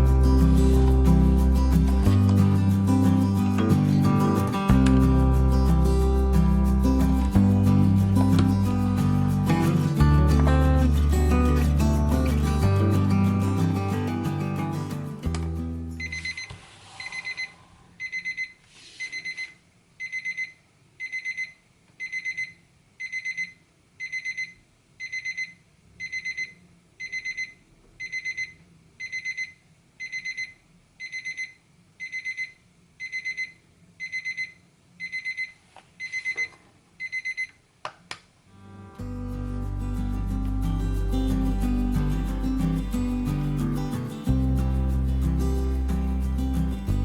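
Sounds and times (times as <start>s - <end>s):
alarm clock beeping: 16.0s - 37.5s.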